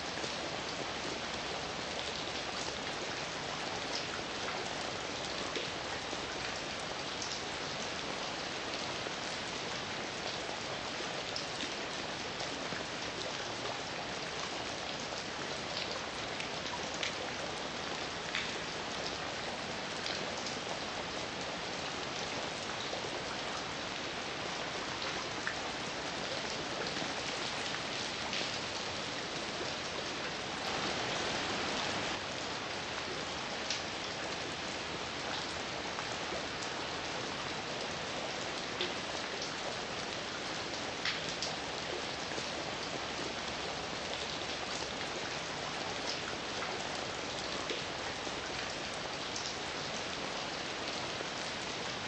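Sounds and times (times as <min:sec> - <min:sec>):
heavy rain hissing: 0:30.4 - 0:32.2.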